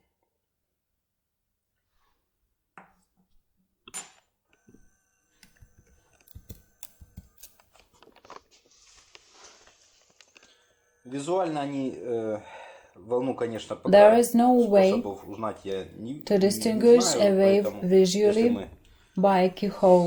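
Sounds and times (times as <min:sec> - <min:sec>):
small hand tools clicking: 0:05.4 - 0:07.7.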